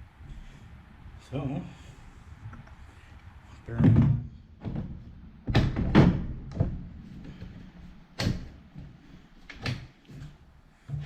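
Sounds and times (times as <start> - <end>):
metal rack knocks and clunks: 3.7 - 6.9.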